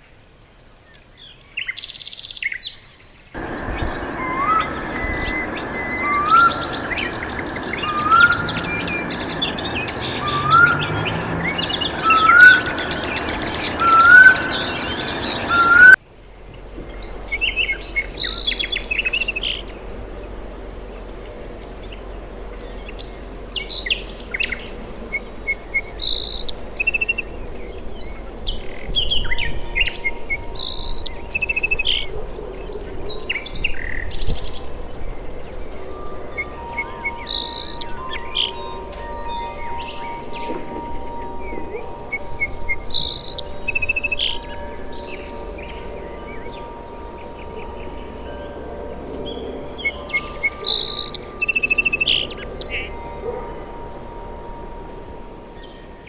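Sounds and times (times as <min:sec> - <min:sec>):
chorus of bird chirps: 0:03.4 - 0:16.0, 0:34.3 - 0:56.0
high bird chirps: 0:03.4 - 0:16.0, 0:36.4 - 0:55.7
rising whistled bird note: 0:03.4 - 0:16.0, 0:35.6 - 0:55.8.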